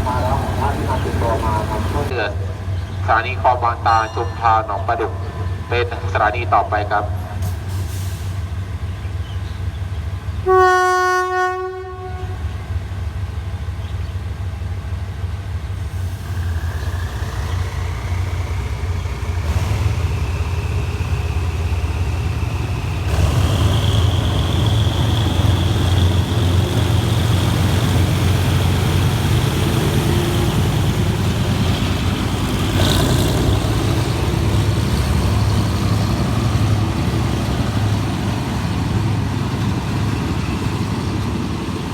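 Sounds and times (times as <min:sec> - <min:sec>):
locomotive horn blast: 0:00.0 - 0:02.1, 0:10.4 - 0:12.6
diesel locomotive engine running: 0:00.0 - 0:41.9.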